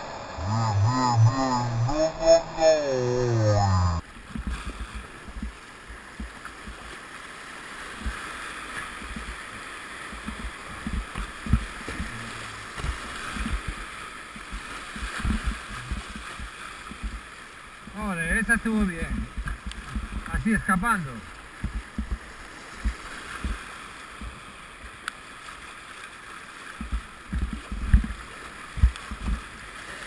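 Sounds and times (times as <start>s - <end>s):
whitewater rushing and gurgling: 0.0s - 30.0s
voice or music: 0.3s - 4.0s
low knocks and thumps: 10.1s - 17.2s, 19.2s - 20.3s, 21.6s - 23.6s.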